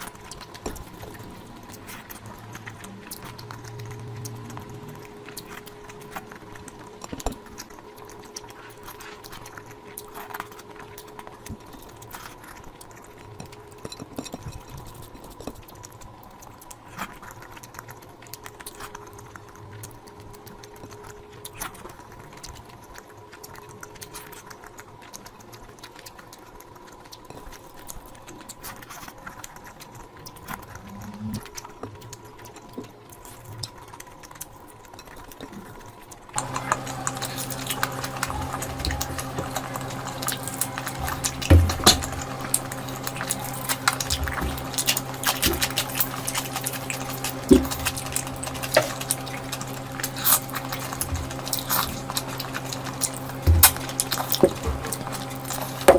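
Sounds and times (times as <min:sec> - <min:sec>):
wet chewing and mouth clicks: 0:00.0 - 0:55.9
steady low hum: 0:36.4 - 0:55.9.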